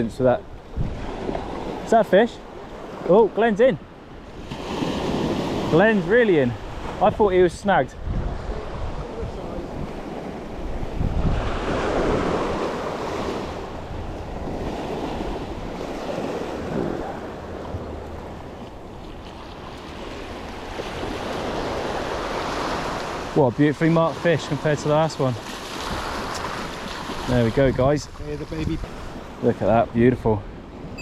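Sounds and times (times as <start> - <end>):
wind buffeting microphone: 0.0 - 1.8, 6.6 - 23.4, 25.7 - 31.0
waves washing on shore: 0.0 - 29.9.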